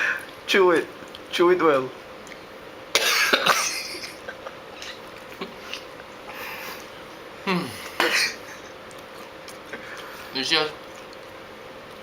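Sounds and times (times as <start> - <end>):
person coughing: 3.0 - 4.2, 7.6 - 8.5
person chewing crunchy insect: 8.4 - 10.2.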